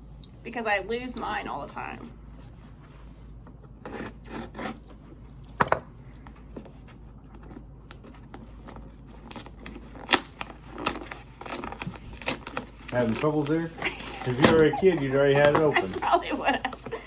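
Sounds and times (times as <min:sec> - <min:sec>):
knife sawing at a package: 0:03.8 - 0:04.8, 0:09.2 - 0:14.5
package rustling: 0:06.6 - 0:17.0.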